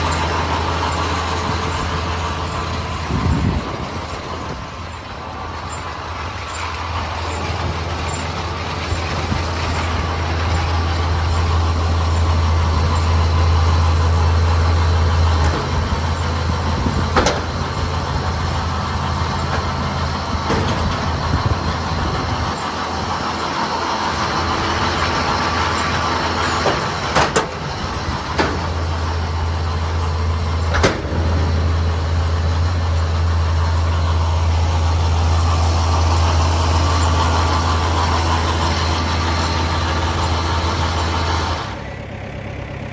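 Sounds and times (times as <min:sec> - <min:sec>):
baler machinery running: 0:00.0 - 0:42.9
tractor engine drone: 0:00.0 - 0:42.9
sharp metal clanks: 0:25.7 - 0:33.9.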